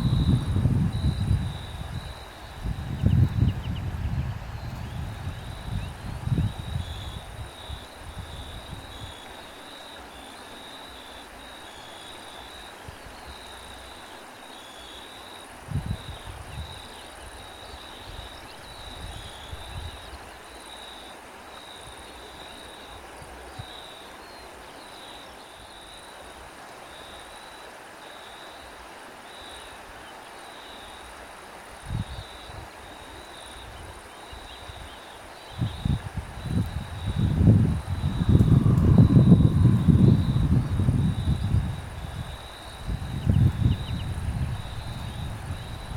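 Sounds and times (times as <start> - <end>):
wind buffeting microphone: 0.0 - 9.2, 15.6 - 17.4, 33.6 - 45.9
constant hiss: 0.0 - 45.9
crickets chirping: 0.0 - 45.9.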